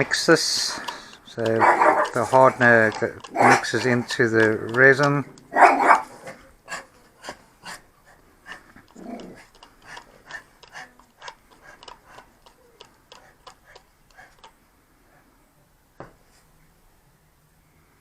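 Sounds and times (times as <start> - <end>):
resin being stirred in container: 0.0 - 5.4.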